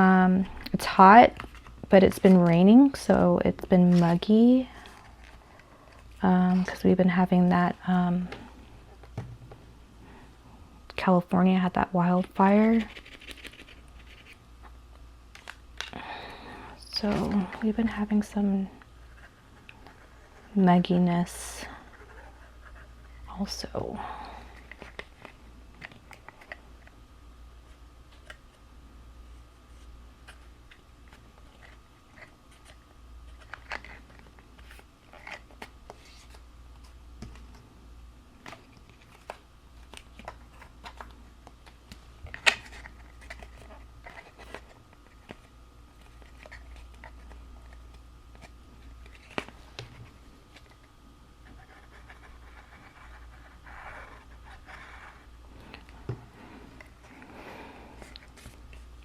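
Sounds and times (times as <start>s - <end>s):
cardstock rustling and crinkling: 0.4s - 7.8s, 29.7s - 37.6s, 38.4s - 57.2s.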